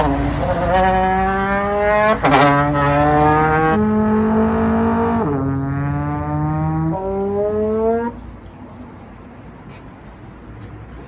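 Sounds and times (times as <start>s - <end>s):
trombone long held notes: 0.0s - 8.1s.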